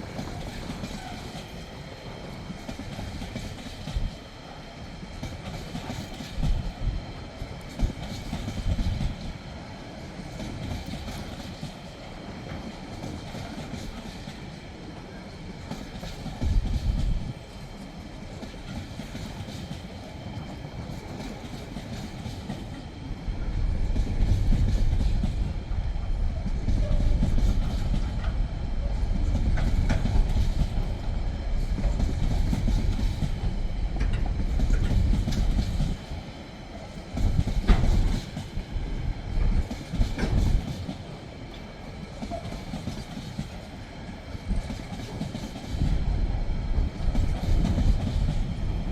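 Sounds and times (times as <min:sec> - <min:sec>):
freight train wheels rumbling: 0:00.0 - 0:48.9.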